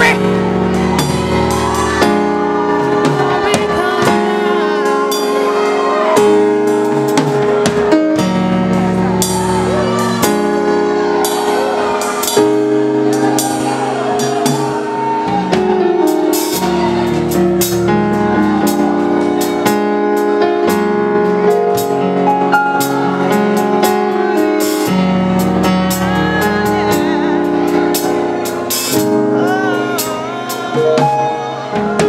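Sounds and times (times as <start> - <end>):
held keyboard chords: 0.0 - 32.0
steady drum beat: 0.0 - 32.0
worship band music: 0.0 - 32.0.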